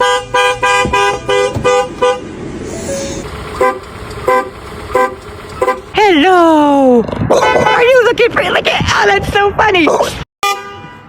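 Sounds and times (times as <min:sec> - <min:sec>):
car horn tooting: 0:00.0 - 0:02.3, 0:03.5 - 0:06.0, 0:10.4 - 0:11.0.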